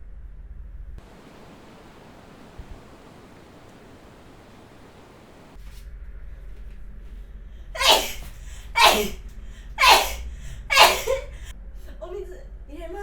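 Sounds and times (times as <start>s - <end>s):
steady low hum: 1.0s - 5.6s
woman sneezing: 7.8s - 9.2s, 9.8s - 11.3s.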